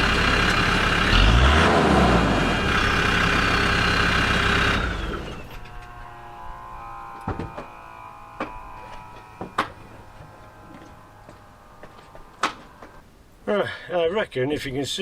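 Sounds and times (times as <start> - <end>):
diesel engine idling and revving: 0.0 - 13.0
oil filter whine spooling down: 1.9 - 13.1.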